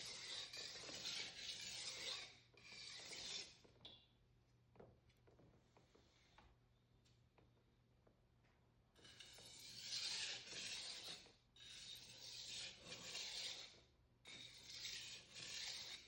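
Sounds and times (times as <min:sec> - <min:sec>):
knife scraping on a whetstone: 0:00.0 - 0:03.6, 0:09.2 - 0:11.2, 0:12.0 - 0:13.6, 0:14.6 - 0:16.0.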